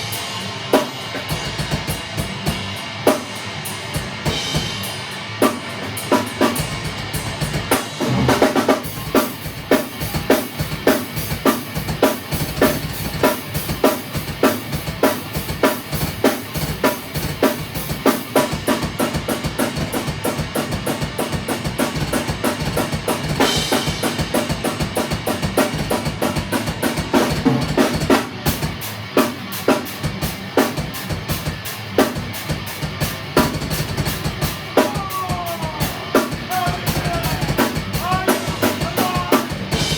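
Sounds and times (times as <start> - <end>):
band jamming: 0.0 - 39.9
drum kit playing a steady beat: 0.0 - 39.9.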